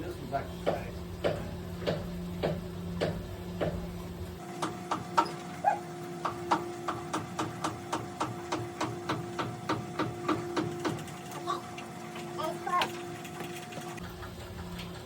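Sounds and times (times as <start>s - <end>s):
steady hum: 0.0s - 15.0s
rapid mechanical ticking: 6.2s - 14.7s.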